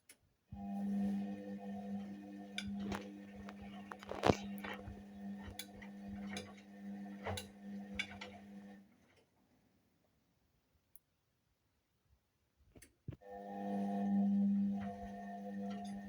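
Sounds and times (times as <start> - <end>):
washing machine motor hum: 0.6 - 9.0, 13.4 - 16.0.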